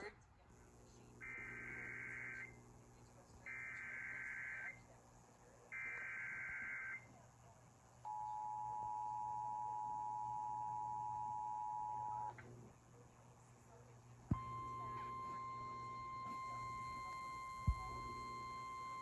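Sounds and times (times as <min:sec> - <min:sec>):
two-tone attention signal: 0:14.3 - 0:19.0.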